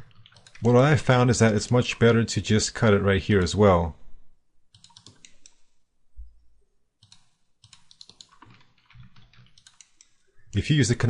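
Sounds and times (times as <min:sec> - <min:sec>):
mouse and keyboard clicking: 0:00.1 - 0:00.7, 0:04.7 - 0:05.6, 0:07.0 - 0:10.2.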